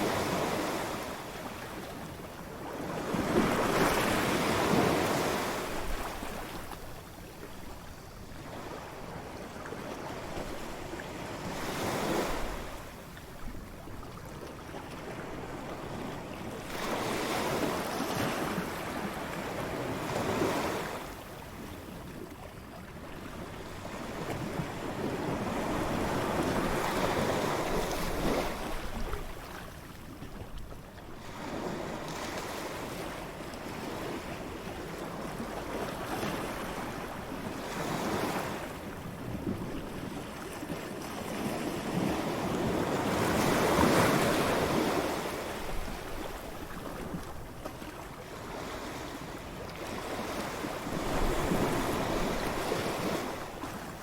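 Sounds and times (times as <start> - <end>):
ocean waves breaking on beach: 0.0 - 30.3, 31.1 - 54.0.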